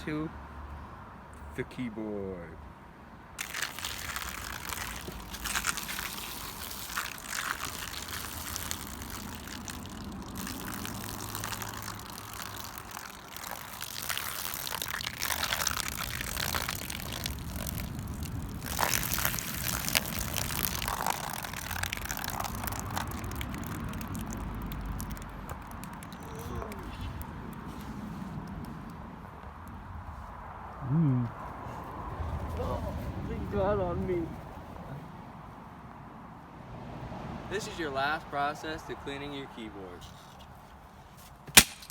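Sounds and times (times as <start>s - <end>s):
dried peas rattling on keyboard: 3.4s - 18.0s.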